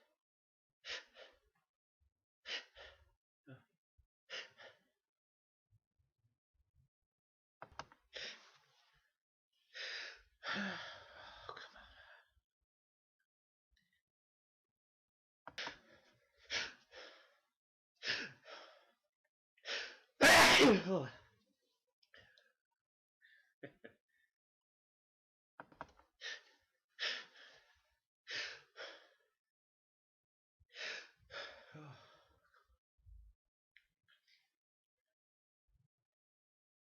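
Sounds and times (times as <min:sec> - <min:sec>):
person gasping and huffing: 0:20.2 - 0:21.1
person sneezing: 0:20.2 - 0:21.1.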